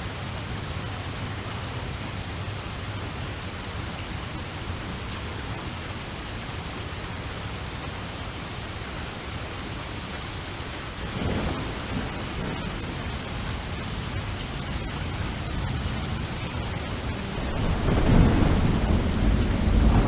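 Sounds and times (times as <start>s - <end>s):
steady rain: 0.0s - 20.0s
low rumble of thunder: 10.9s - 20.0s.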